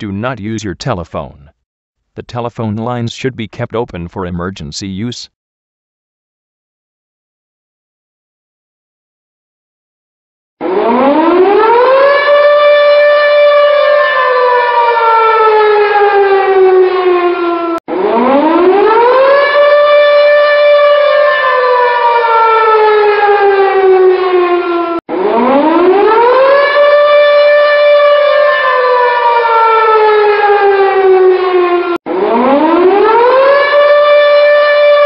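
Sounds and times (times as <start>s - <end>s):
air-raid siren winding up and down: 10.6s - 35.0s.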